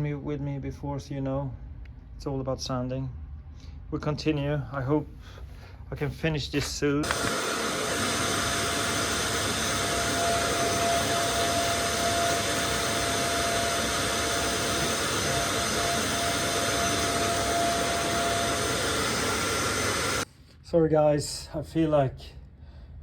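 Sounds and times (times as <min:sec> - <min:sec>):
electric sander whining: 0:07.0 - 0:20.2.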